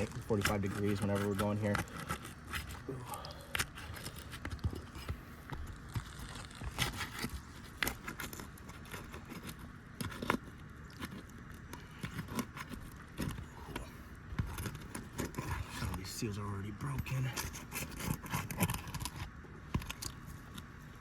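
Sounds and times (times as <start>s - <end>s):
roof shingles being pried up: 0.0s - 16.1s.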